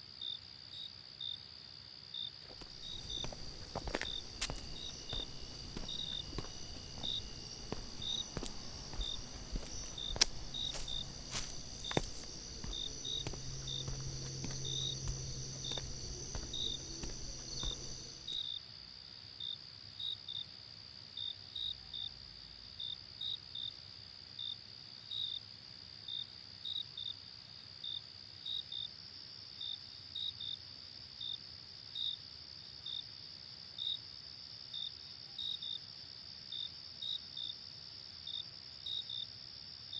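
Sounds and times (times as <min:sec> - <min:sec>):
crickets chirping: 0:00.2 - 0:18.5
high insect drone: 0:02.5 - 0:18.4
low hum: 0:02.6 - 0:18.4.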